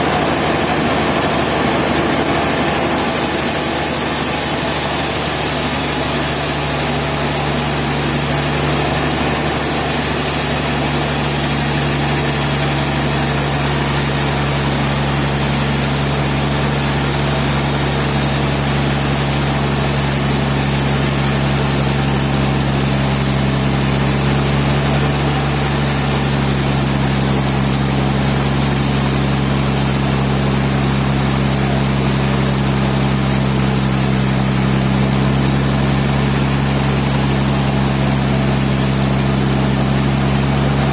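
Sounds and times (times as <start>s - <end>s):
engine running steadily: 0.0s - 40.9s.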